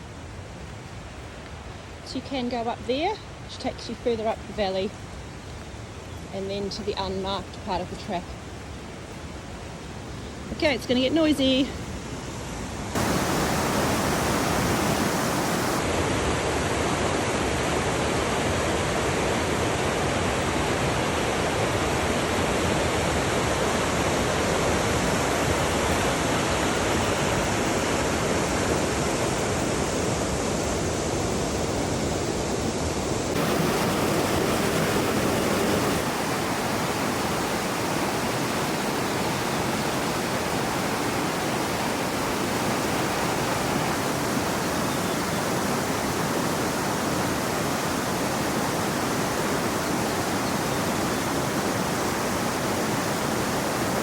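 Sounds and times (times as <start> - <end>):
river rushing: 13.0 - 31.4, 32.1 - 54.0.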